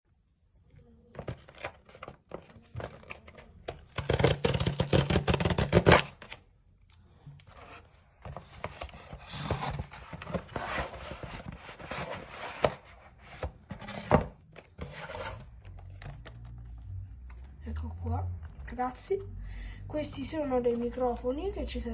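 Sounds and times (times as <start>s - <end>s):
rubbing and scraping: 7.5s - 17.0s.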